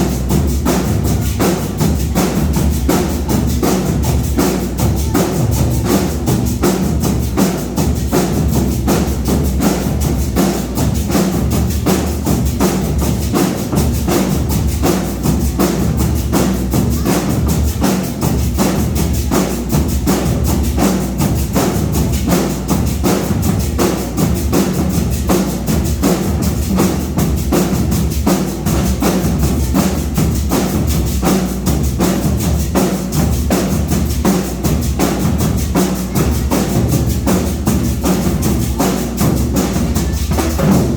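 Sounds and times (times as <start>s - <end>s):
marching band drums: 0.0s - 40.9s.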